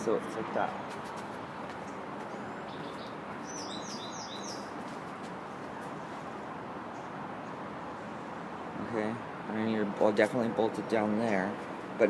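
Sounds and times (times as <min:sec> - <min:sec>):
outdoor background hiss: 0:00.0 - 0:12.0
bird chirping: 0:01.8 - 0:04.9.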